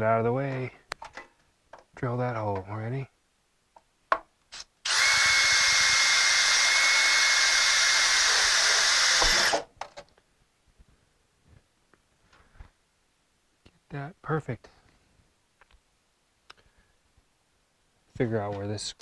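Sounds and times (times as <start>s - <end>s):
power drill whining: 4.5s - 9.7s.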